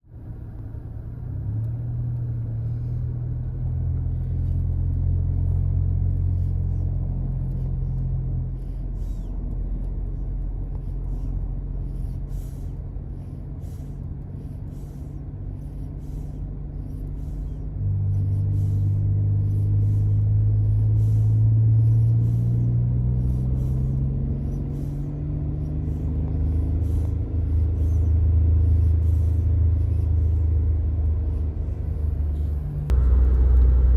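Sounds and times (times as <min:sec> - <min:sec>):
car engine and road hum: 0:00.0 - 0:33.9.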